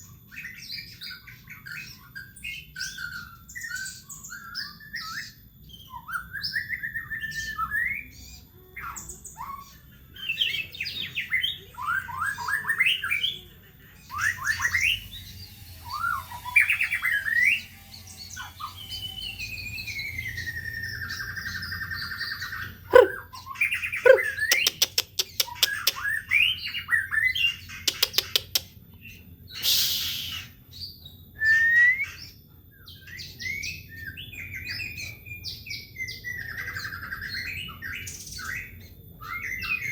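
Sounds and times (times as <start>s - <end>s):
bird singing whistled song: 0.4s - 8.5s, 29.6s - 39.9s
harsh rasp: 22.9s - 23.2s
bird rapid clicks: 24.1s - 26.0s, 27.9s - 28.7s.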